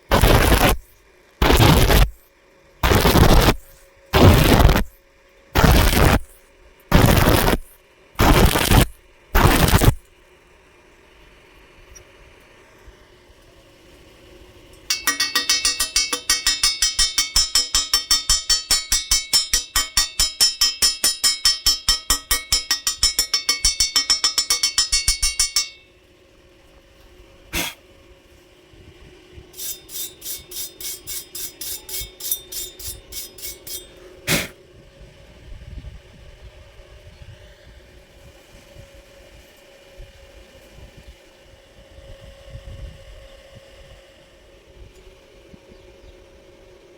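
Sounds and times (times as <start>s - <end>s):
hammer striking steel: 14.9s - 25.9s, 29.6s - 34.5s.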